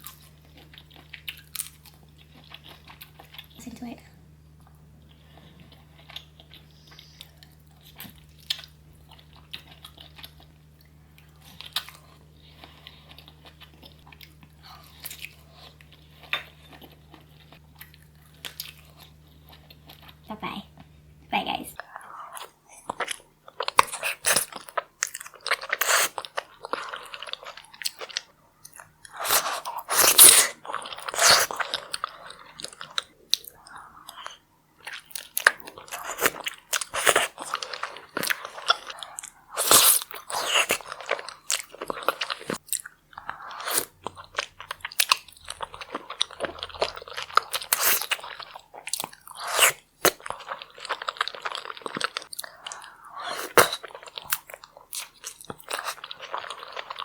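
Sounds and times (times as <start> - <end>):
crunchy bites and chewing: 21.8 - 57.0.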